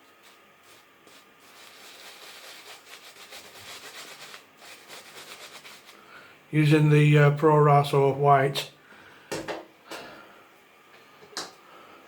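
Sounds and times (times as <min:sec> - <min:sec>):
shaving brush scrubbing lather: 0:00.0 - 0:06.0.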